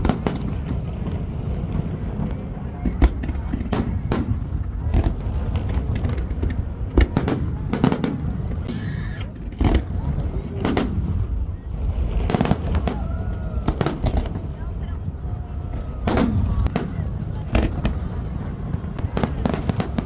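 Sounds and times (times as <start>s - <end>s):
fireworks bangs: 0.0s - 20.0s.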